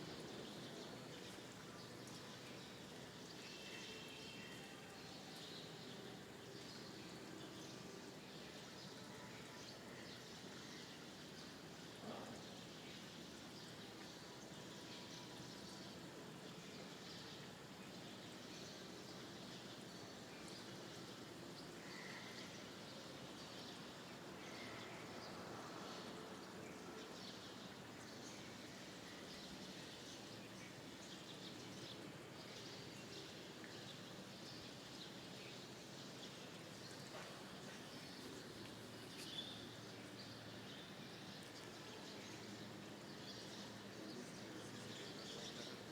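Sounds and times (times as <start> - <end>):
background hiss: 0.0 - 45.9
small birds chirping: 27.6 - 45.9.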